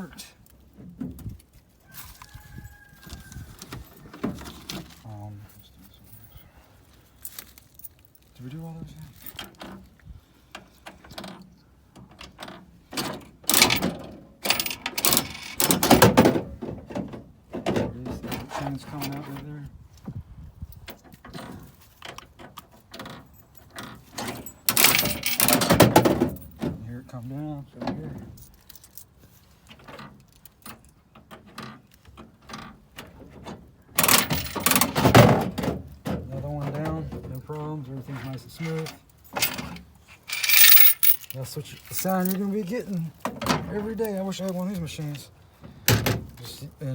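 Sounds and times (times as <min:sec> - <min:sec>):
vending machine rattling and clunking: 0:12.2 - 0:19.3, 0:23.9 - 0:26.8, 0:32.3 - 0:37.4, 0:38.3 - 0:42.5
vending machine mechanical rattle: 0:13.5 - 0:16.2, 0:24.2 - 0:26.6, 0:34.0 - 0:35.4.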